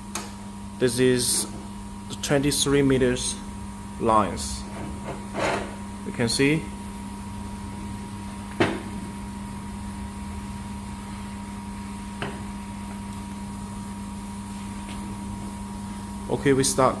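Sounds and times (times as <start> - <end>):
welding machine electrical hum: 0.0 - 17.0.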